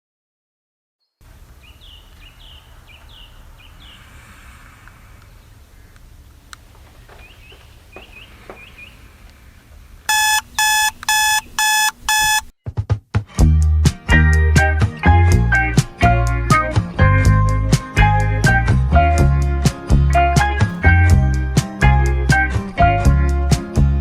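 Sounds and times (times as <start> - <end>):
alarm clock beeping: 10.1 - 12.5
plucked string music: 13.3 - 23.0.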